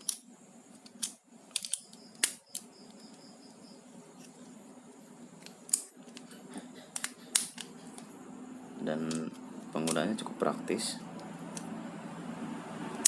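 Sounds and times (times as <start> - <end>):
multi-tool clicks and knocks: 5.4 - 8.1.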